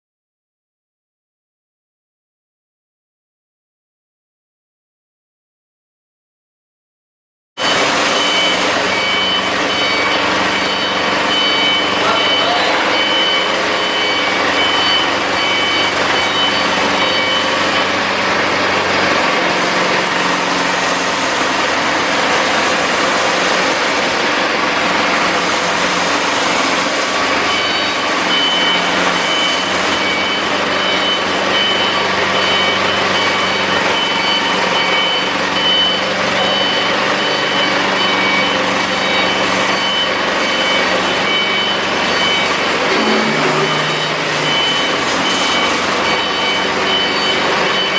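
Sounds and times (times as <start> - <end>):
rapidly repeating high beep: 7.6 - 17.9, 27.5 - 47.9
diesel generator running: 7.6 - 47.9.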